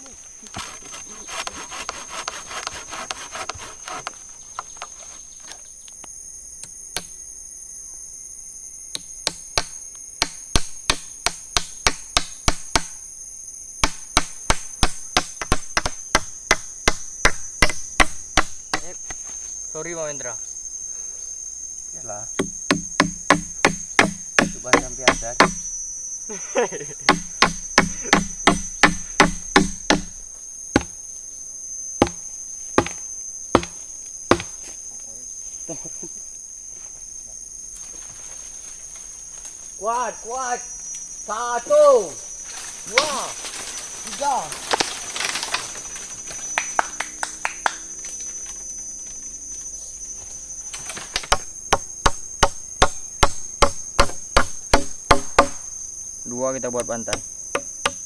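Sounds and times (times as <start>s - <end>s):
forest insects droning: 0.0s - 58.0s
chopping strikes on wood: 7.0s - 7.2s, 9.0s - 13.0s, 13.8s - 19.2s, 22.4s - 25.7s, 27.0s - 31.0s, 32.0s - 33.0s, 33.6s - 34.7s, 51.1s - 55.7s, 56.8s - 58.0s.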